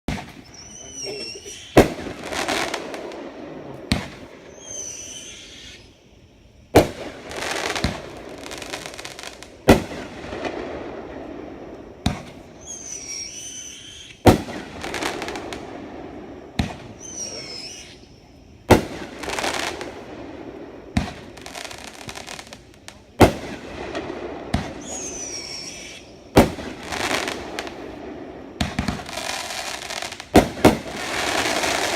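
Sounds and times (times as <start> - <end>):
firework bangs: 0.1 - 5.9, 6.7 - 31.9
firework crackling: 0.1 - 5.9, 6.6 - 31.9
high wavering whistles: 0.3 - 1.8, 4.5 - 6.0, 12.6 - 14.2, 16.9 - 18.2, 24.8 - 26.2.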